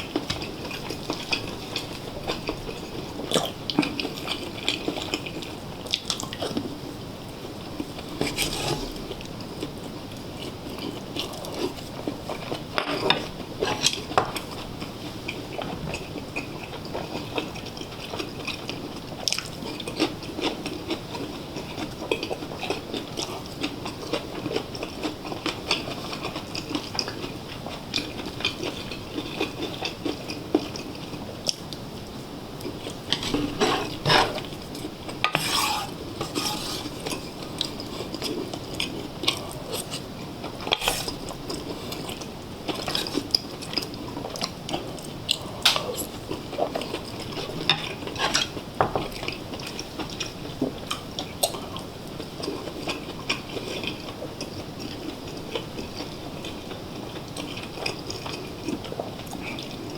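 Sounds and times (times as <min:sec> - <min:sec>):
utensils scraping and clinking on pot: 0:08.2 - 0:09.0, 0:33.0 - 0:37.3, 0:40.7 - 0:41.2.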